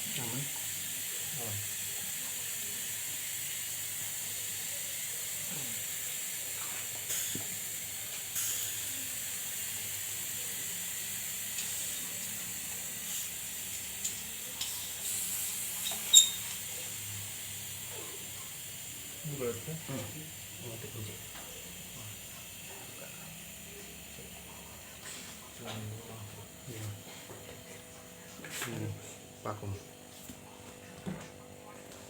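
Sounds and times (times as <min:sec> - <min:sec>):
steady hiss: 0:00.0 - 0:22.6.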